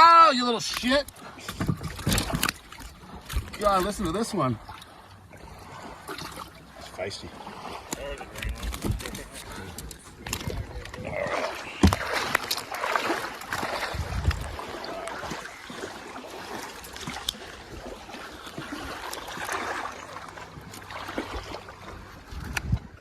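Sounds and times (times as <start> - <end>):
trickling water: 0.0 - 23.0.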